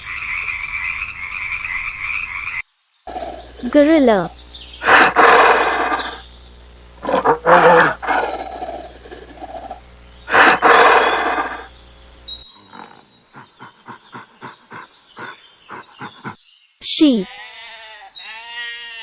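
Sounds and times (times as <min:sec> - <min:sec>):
gorilla roaring: 0:03.1 - 0:03.8, 0:04.8 - 0:06.2, 0:07.0 - 0:11.7, 0:12.5 - 0:16.4.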